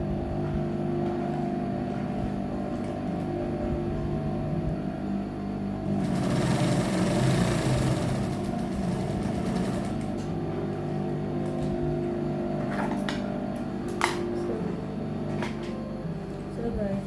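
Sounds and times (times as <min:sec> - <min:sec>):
electric sewing machine stitching: 0:05.9 - 0:10.4.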